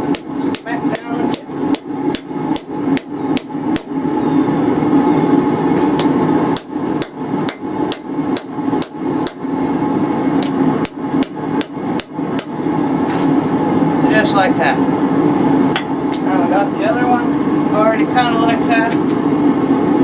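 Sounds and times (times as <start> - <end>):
steady droning hum: 0.0 - 20.0
hammer striking metal on anvil: 0.1 - 4.0, 6.6 - 9.4, 15.8 - 16.0.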